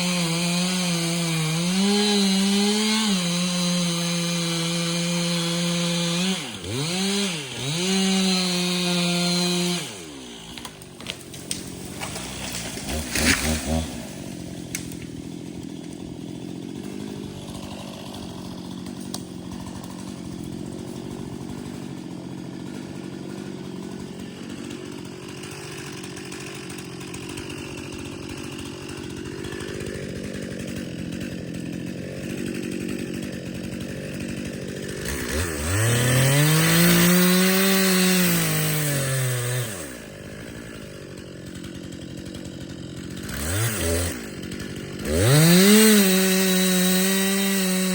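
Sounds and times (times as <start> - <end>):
chainsaw running and revving: 0.0 - 47.9.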